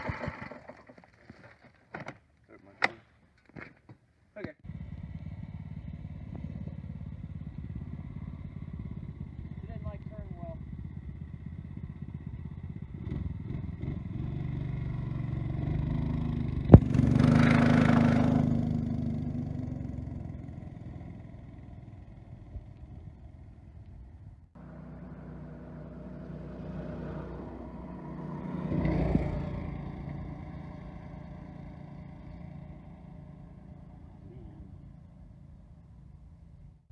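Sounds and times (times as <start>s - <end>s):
small engine running: 24.6s - 28.1s.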